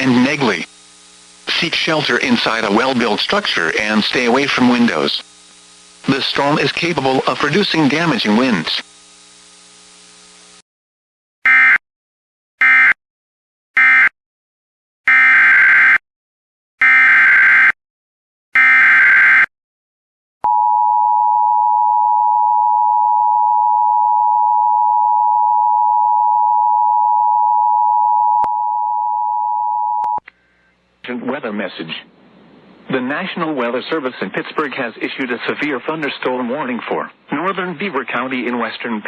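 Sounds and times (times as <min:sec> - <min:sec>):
faint hum: 0:00.0 - 0:10.6, 0:20.5 - 0:36.3.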